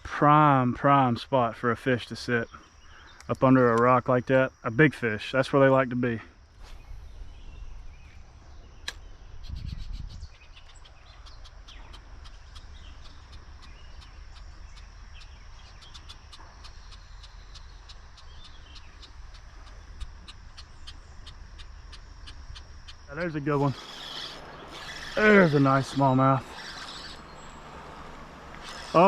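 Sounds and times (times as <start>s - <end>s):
insects chirping: 0.1s - 29.0s
steady high drone: 11.5s - 29.0s.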